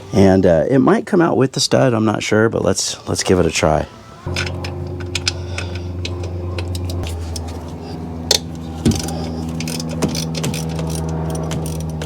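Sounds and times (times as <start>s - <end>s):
steady low hum: 3.9s - 12.0s
ratchet clicking: 4.3s - 7.5s, 8.3s - 12.0s.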